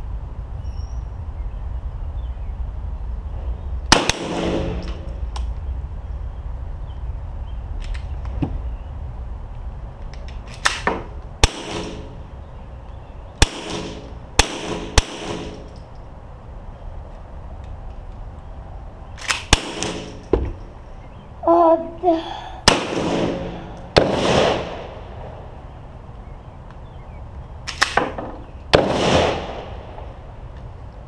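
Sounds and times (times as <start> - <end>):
steady low rumble: 0.0 - 31.0
gunshots with echoing ring: 3.9 - 5.1, 10.8 - 12.2, 13.4 - 15.7, 19.2 - 20.3, 22.6 - 25.2, 27.9 - 30.2.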